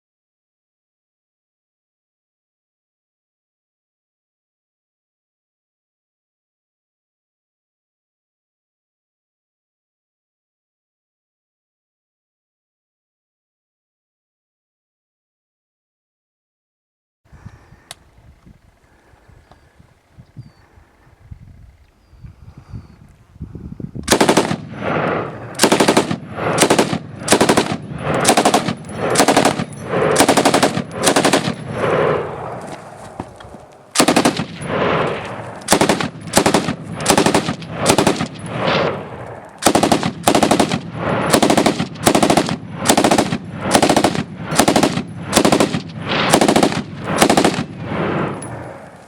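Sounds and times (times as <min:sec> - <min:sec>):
machine gun firing bursts: 0:24.1 - 0:32.5, 0:33.9 - 0:39.0, 0:39.6 - 0:48.5.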